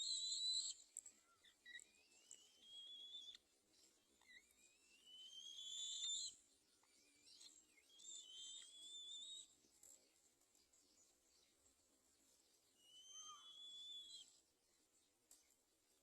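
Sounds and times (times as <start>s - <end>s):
bird's rising whistled calls: 0.0s - 0.8s, 1.7s - 3.4s, 4.3s - 6.4s, 7.2s - 9.5s, 12.8s - 14.3s.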